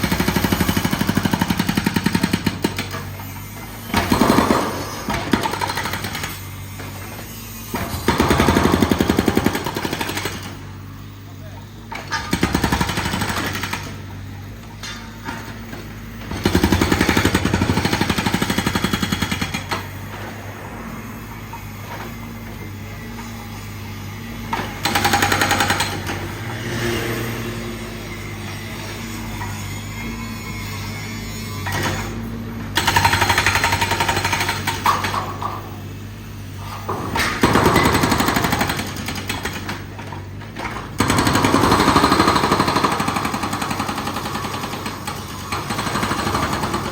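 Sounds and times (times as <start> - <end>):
jackhammer hammering: 0.0 - 3.0, 3.9 - 6.9, 7.7 - 10.6, 12.0 - 14.0, 16.2 - 20.9, 24.5 - 27.7, 32.8 - 35.6, 37.0 - 46.9.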